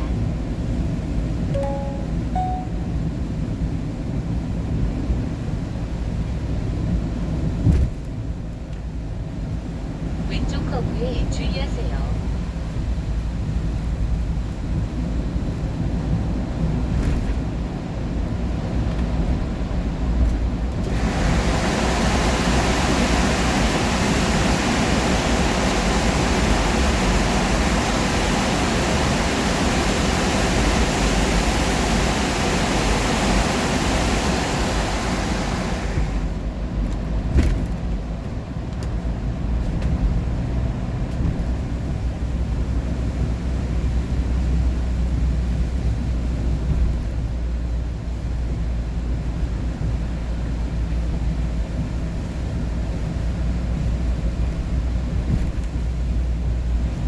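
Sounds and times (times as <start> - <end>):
car road and engine rumble: 0.0 - 57.0
loud rushing hiss: 20.9 - 36.3.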